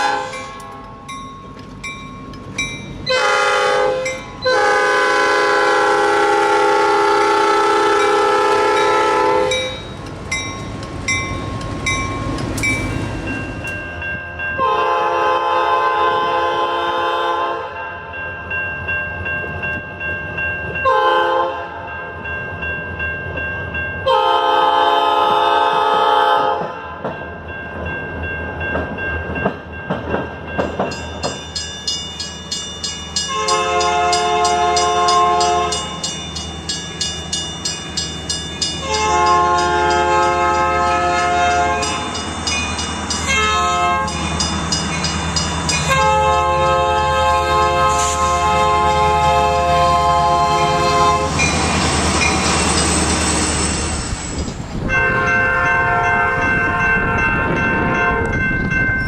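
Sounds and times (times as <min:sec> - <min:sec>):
fouled locomotive horn blasts: 0:00.0 - 0:00.6, 0:03.1 - 0:09.9, 0:14.6 - 0:17.8, 0:20.8 - 0:21.8, 0:24.0 - 0:26.8, 0:33.3 - 0:35.8, 0:38.8 - 0:42.0, 0:43.3 - 0:44.2, 0:45.9 - 0:51.4, 0:54.8 - 0:57.2
locomotive air horn chord: 0:00.0 - 0:00.6, 0:03.1 - 0:09.8, 0:14.6 - 0:17.8, 0:20.8 - 0:21.8, 0:24.1 - 0:26.7, 0:33.3 - 0:35.8, 0:38.8 - 0:42.0, 0:43.3 - 0:44.2, 0:45.9 - 0:51.4, 0:54.9 - 0:56.9
railcar wheels clickety-clack: 0:00.0 - 0:59.0.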